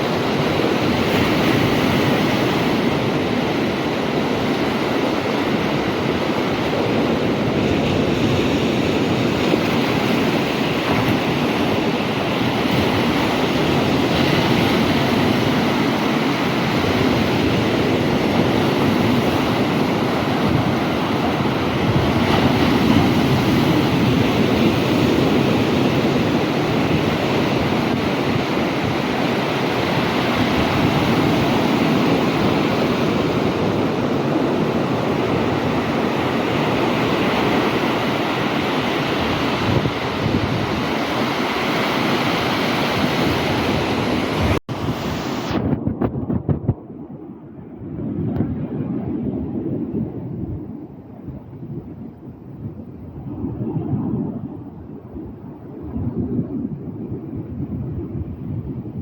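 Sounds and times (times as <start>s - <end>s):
sea waves breaking on shore: 0.0s - 45.8s
wind on microphone: 0.0s - 59.0s.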